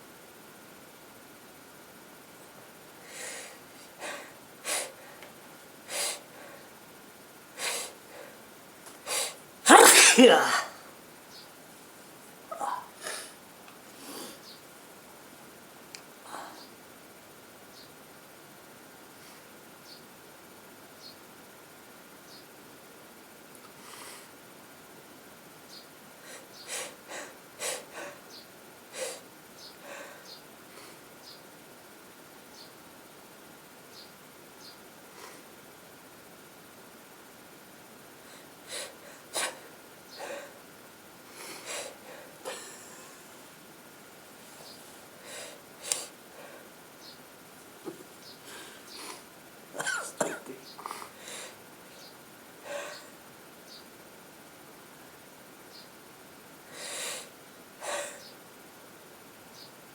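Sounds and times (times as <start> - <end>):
person sniffling through congested nose: 3.1 - 5.2, 5.9 - 6.6, 7.6 - 8.4, 9.0 - 10.7, 26.2 - 28.3, 28.9 - 31.0, 38.3 - 40.6, 41.3 - 43.2, 44.6 - 46.7, 48.4 - 49.3
loud sneeze: 9.1 - 10.9
short sharp breaths: 44.5 - 46.8.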